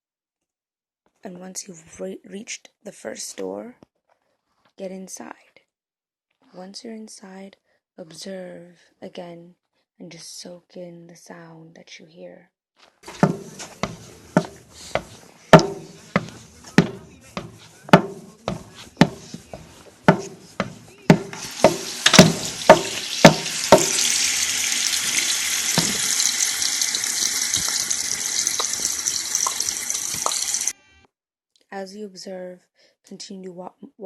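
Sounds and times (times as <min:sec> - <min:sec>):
footsteps on hard floor: 0:12.8 - 0:24.1, 0:25.8 - 0:26.2.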